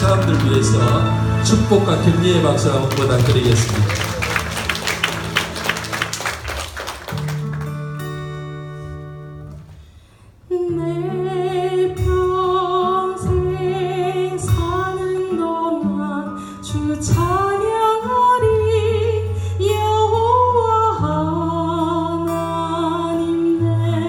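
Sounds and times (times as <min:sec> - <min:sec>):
worship band music: 0:00.0 - 0:08.9
guitar: 0:00.0 - 0:24.0.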